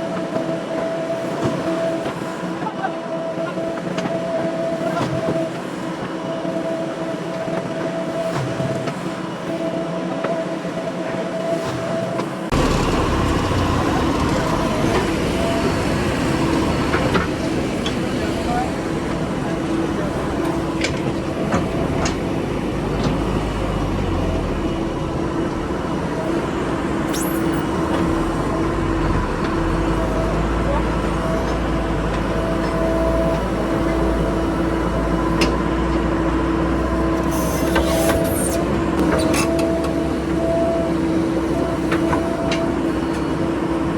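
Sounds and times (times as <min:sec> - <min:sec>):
diesel machinery engine rumble: 0:12.5 - 0:43.9.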